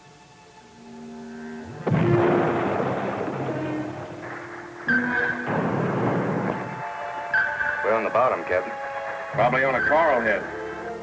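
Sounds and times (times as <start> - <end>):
sudden loud hit: 1.7 - 7.3
dramatic orchestral music: 1.7 - 11.0
explosion rumble: 1.8 - 7.8.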